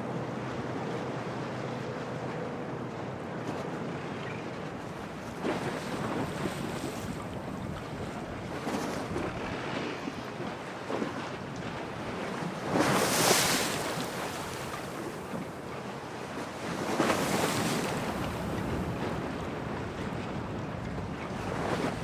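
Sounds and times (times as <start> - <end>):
waves: 0.0 - 22.0
wind buffeting microphone: 2.9 - 13.0.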